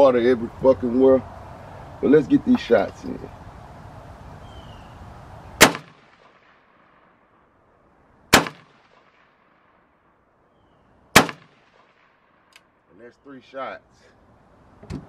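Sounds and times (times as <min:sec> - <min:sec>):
rifle shots with echo: 0:05.6 - 0:07.2, 0:08.3 - 0:09.8, 0:11.1 - 0:12.5.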